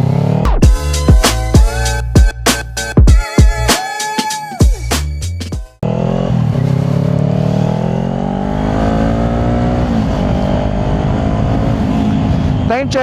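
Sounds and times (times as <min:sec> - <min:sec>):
motorcycle accelerating: 0:00.0 - 0:01.8, 0:05.8 - 0:13.0
intro music: 0:00.4 - 0:05.8.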